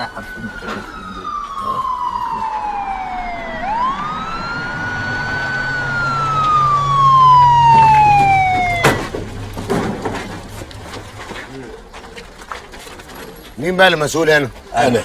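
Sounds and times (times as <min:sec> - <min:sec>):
police siren wailing: 0:00.0 - 0:10.5.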